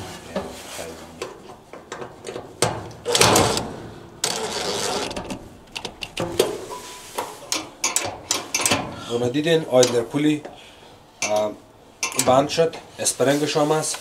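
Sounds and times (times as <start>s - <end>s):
metal clicks and knocks: 1.2s - 6.6s, 7.5s - 9.0s, 9.8s - 10.1s, 11.2s - 12.4s.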